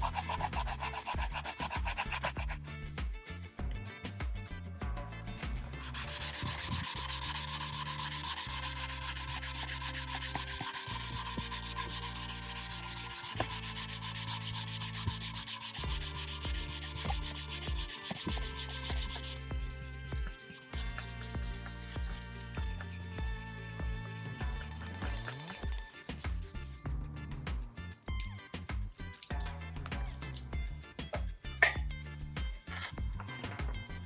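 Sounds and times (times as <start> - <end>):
sanding plastic: 0.0 - 2.6, 5.8 - 26.8.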